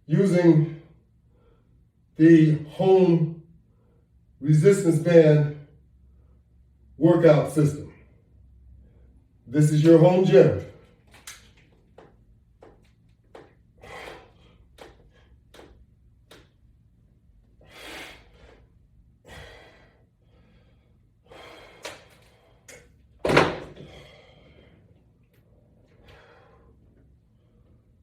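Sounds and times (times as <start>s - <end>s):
short breathy exhales: 13.8s - 14.6s.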